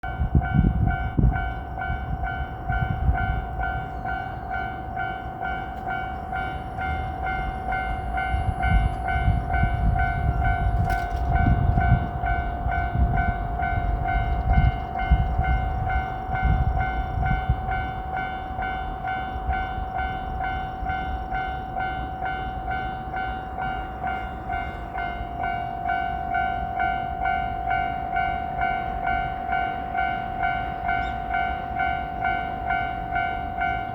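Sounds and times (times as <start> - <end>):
diesel train rumbling: 0.0 - 33.9
railroad crossing bell ringing: 0.0 - 33.9.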